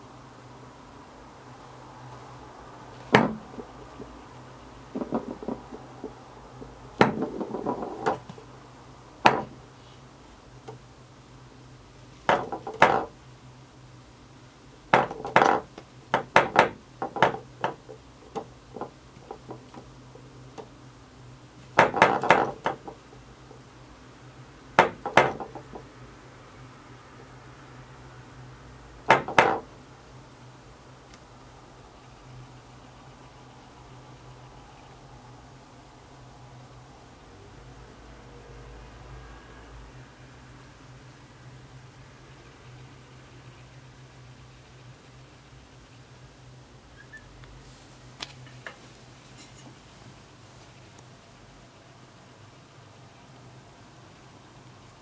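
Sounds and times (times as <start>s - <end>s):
ball rolling and clattering: 4.9s - 6.2s, 7.0s - 8.4s, 21.8s - 23.0s.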